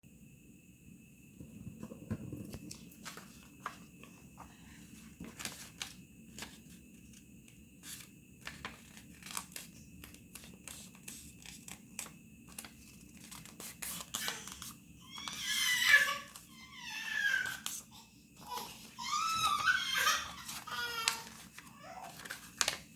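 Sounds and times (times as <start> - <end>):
paper crinkling and rustling: 2.5 - 15.4, 18.9 - 22.9.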